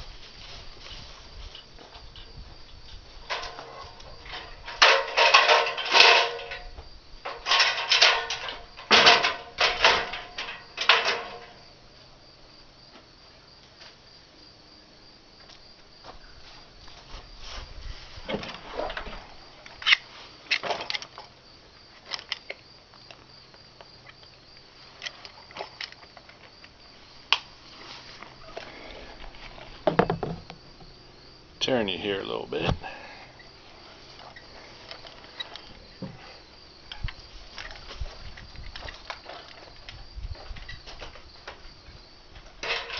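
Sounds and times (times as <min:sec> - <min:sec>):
loud ringing clattering knocks: 0:03.3 - 0:11.6, 0:29.9 - 0:30.6.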